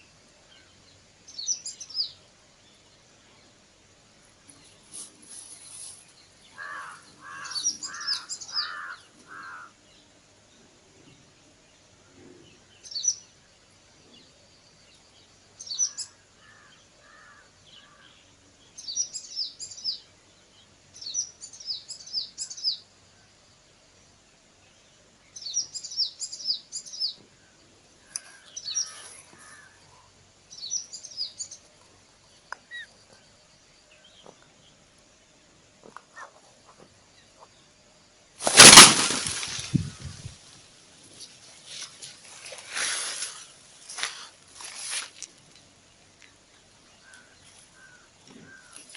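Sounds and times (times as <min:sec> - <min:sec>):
small bird chirping: 0:00.0 - 0:02.2, 0:14.7 - 0:16.8, 0:18.7 - 0:22.8, 0:25.3 - 0:27.2, 0:28.0 - 0:34.8
lower bird call notes: 0:06.5 - 0:09.8.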